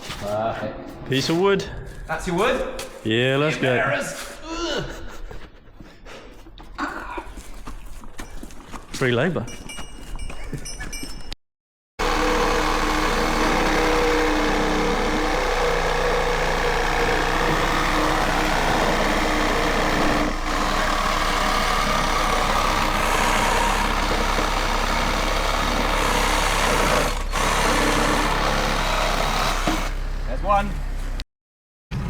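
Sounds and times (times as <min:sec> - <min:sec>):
heavy vehicle engine running: 0:12.0 - 0:31.2.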